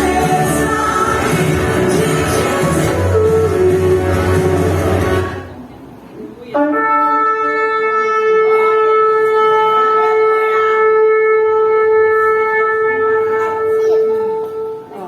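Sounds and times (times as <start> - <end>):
shofar blast: 6.6 - 15.0.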